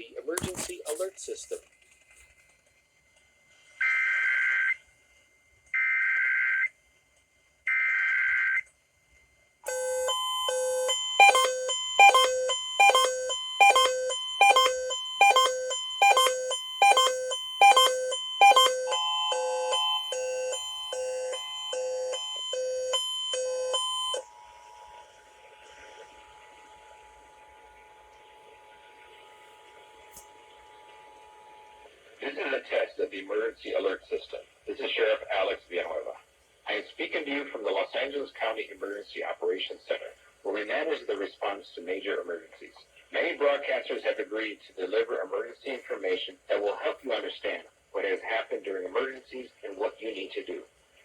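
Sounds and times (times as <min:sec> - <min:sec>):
rhythmic pitched beeps: 0:09.7 - 0:24.2
two-tone attention signal: 0:09.7 - 0:24.2.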